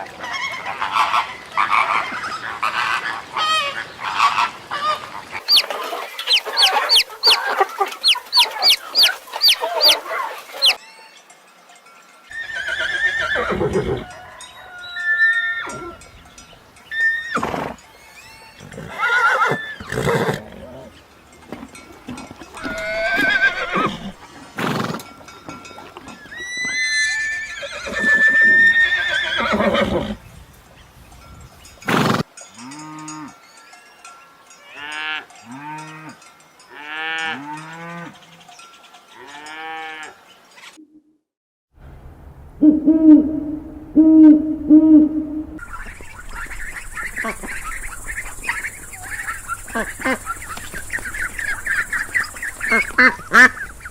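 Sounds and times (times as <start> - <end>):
farm animals calling: 0.1 - 10.8, 12.3 - 30.2, 44.0 - 53.9.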